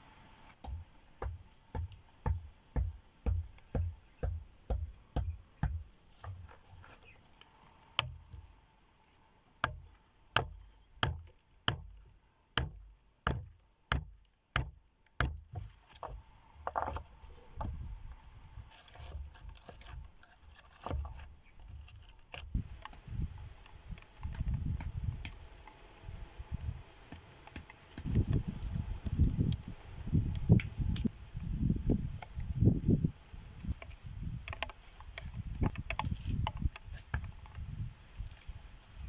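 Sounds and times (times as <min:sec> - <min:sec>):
wood being chopped: 0:00.6 - 0:06.8, 0:08.0 - 0:08.4, 0:09.6 - 0:12.0, 0:12.6 - 0:17.8, 0:23.9 - 0:25.4, 0:27.1 - 0:28.5.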